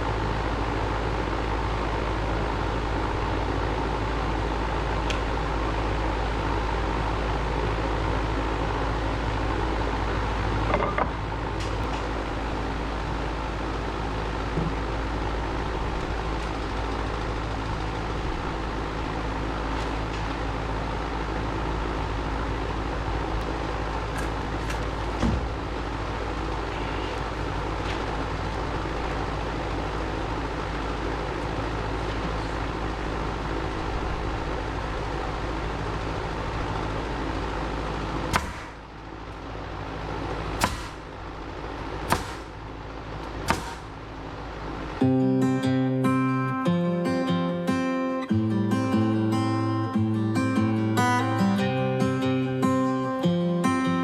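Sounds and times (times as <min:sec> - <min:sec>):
engine running steadily: 0:00.0 - 0:54.0
short knocks: 0:42.1 - 0:42.5.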